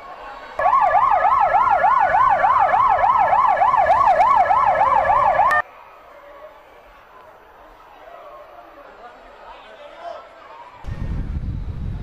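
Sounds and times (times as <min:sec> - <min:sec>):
emergency siren warbling rapidly: 0:00.6 - 0:05.6
steady siren tone sliding up and down: 0:00.6 - 0:05.6.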